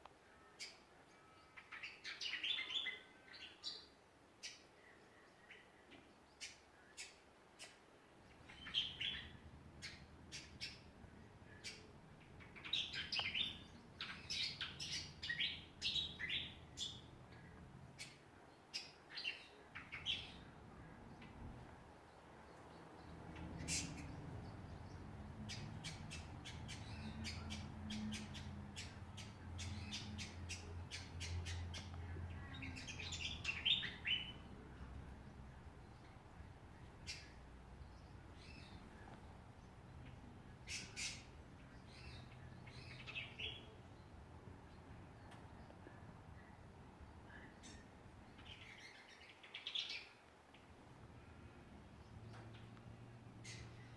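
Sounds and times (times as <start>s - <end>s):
birds chirping and squawking: 23.0s - 34.9s, 39.9s - 43.7s, 53.4s - 53.9s.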